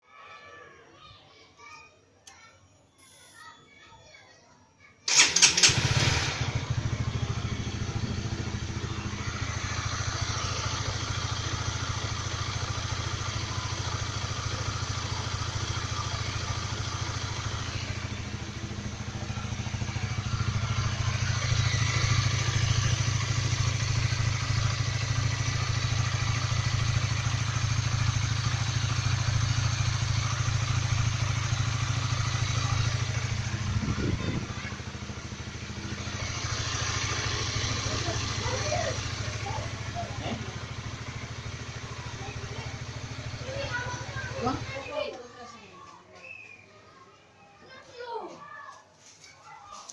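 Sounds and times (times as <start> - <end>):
motorcycle engine idling with knock: 7.4 - 45.2.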